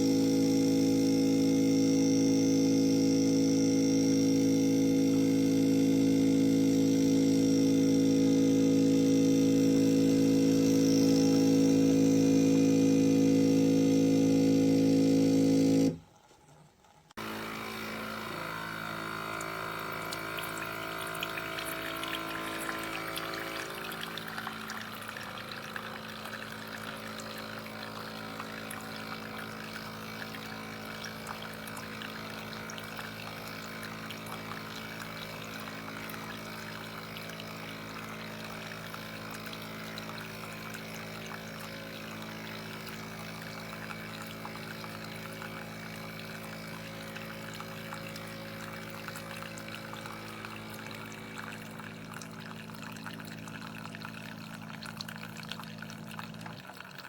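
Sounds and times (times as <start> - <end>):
coffee machine pump humming: 0.0 - 57.0
coffee pouring into cup: 17.2 - 57.0.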